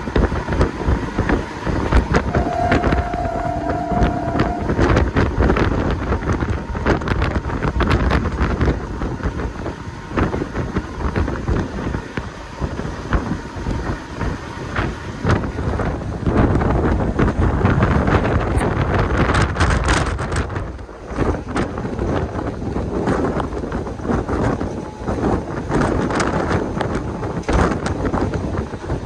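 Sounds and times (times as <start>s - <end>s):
train rumbling: 0.0s - 29.0s
wind buffeting microphone: 0.0s - 29.0s
thin steady tone: 1.4s - 6.9s.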